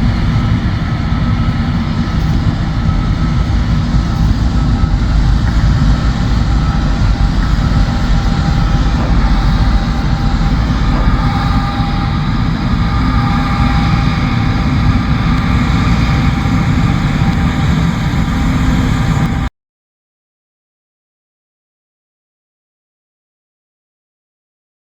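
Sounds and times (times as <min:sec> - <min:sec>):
combine harvester engine drone: 0:00.0 - 0:19.5
faint machinery whining: 0:00.0 - 0:19.5.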